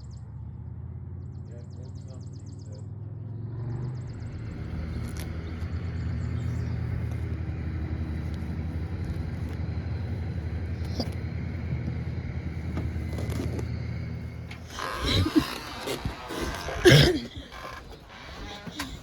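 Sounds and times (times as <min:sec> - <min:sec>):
engine humming: 0:00.0 - 0:19.0.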